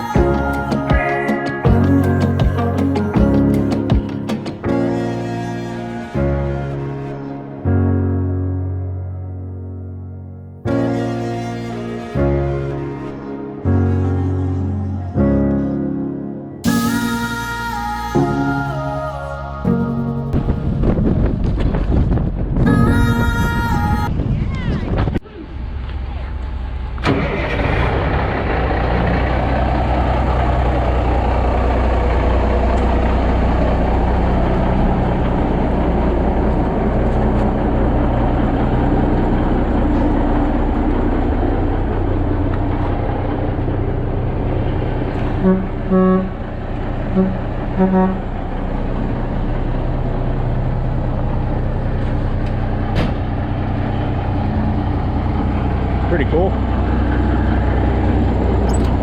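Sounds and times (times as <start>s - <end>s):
truck engine running: 18.4s - 24.0s, 25.6s - 59.0s
short horn toots: 45.2s - 46.4s, 47.1s - 48.3s.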